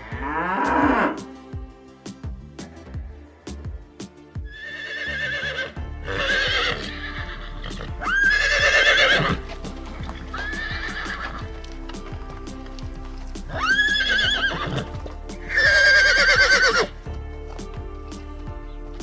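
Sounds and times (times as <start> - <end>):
background music: 0.0 - 19.0
horse whinnying: 4.5 - 11.4, 13.5 - 16.9.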